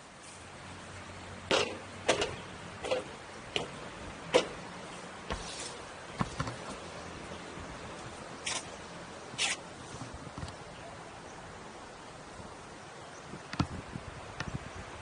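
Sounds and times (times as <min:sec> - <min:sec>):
outdoor background noise: 0:00.0 - 0:15.0
footsteps walking: 0:05.3 - 0:06.8.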